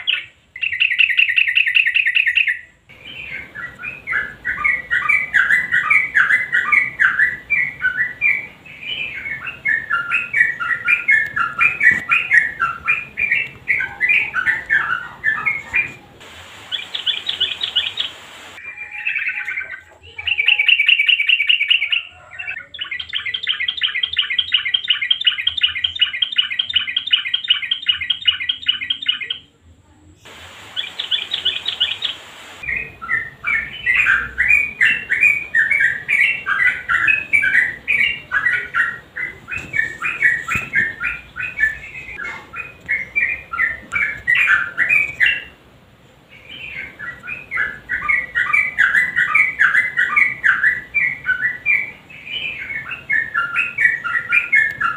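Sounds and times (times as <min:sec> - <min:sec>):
bird chirping phrases: 0:00.0 - 0:54.9.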